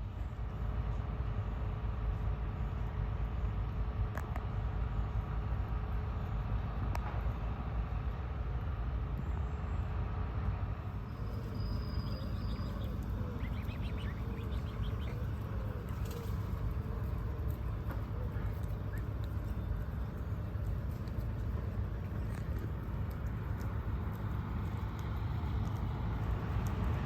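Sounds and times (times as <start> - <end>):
city traffic rumble: 0.0 - 27.0
birds chirping: 11.0 - 27.0.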